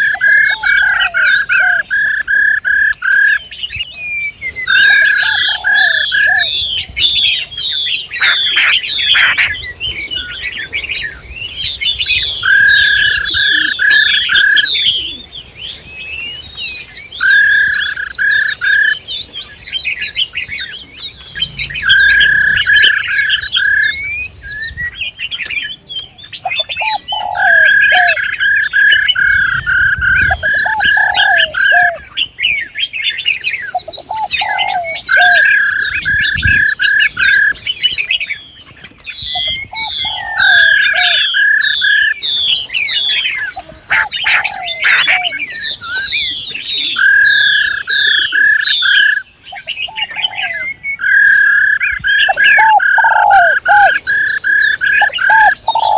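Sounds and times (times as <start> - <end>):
songbirds chirping and trilling: 0.0 - 55.9
bird warbling phrase: 52.2 - 55.9.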